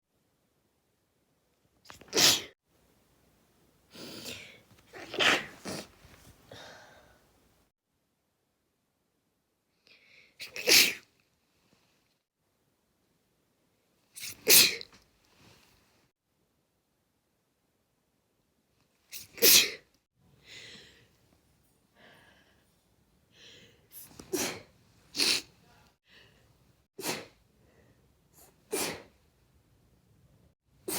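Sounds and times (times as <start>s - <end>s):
person sneezing: 1.9s - 2.6s, 3.9s - 7.0s, 10.4s - 11.0s, 14.2s - 14.9s, 19.2s - 19.8s, 24.0s - 25.5s, 27.0s - 27.4s, 28.4s - 29.2s
soft breathing: 3.9s - 7.5s, 25.6s - 26.7s
sharp in-breath: 6.5s - 7.2s.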